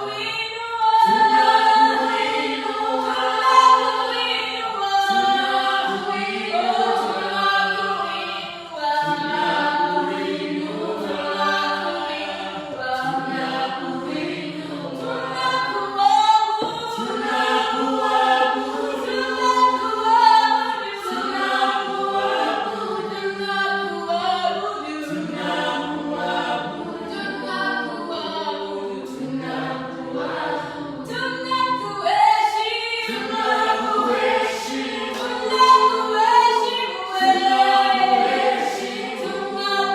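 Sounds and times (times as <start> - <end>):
choir singing a worship song: 0.0 - 39.9.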